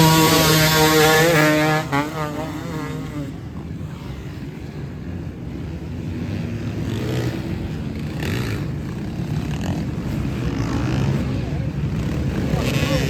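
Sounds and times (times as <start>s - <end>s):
motorcycle engines running: 0.0s - 13.0s.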